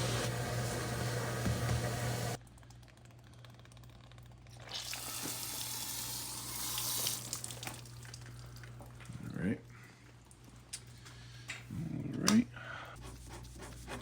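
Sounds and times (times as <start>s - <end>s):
low mechanical hum: 0.0s - 6.6s.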